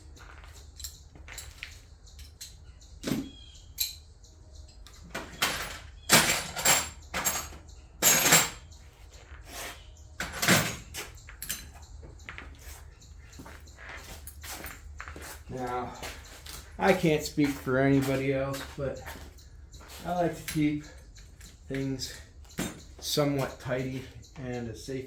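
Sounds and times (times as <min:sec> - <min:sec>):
tools clunking and clicking: 0:00.1 - 0:04.1, 0:04.7 - 0:08.9, 0:10.2 - 0:14.8, 0:16.0 - 0:24.5
metallic rattles: 0:04.8 - 0:08.8.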